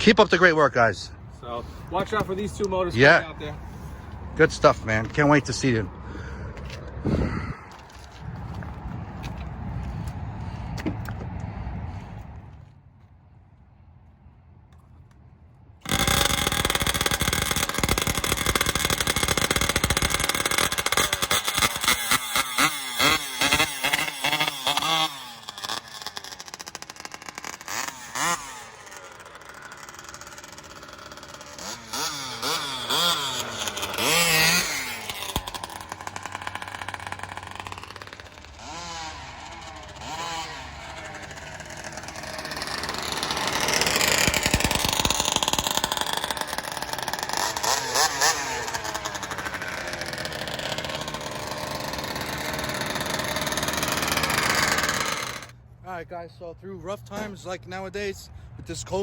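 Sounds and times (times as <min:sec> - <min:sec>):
rc car engine revving: 0:15.8 - 0:55.6.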